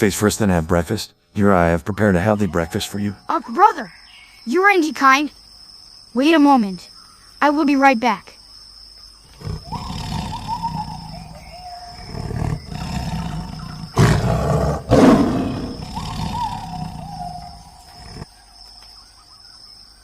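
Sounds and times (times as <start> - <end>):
crickets chirping: 0.0 - 20.0
tiger growling and roaring: 9.3 - 18.3.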